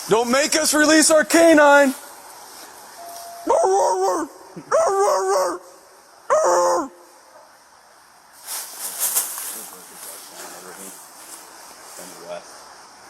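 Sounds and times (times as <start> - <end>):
man imitating dog barks: 3.4 - 5.7, 6.3 - 7.0.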